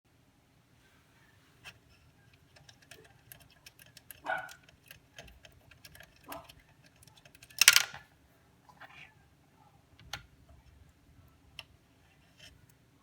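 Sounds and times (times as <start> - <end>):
small hardware clicks: 2.3 - 8.0.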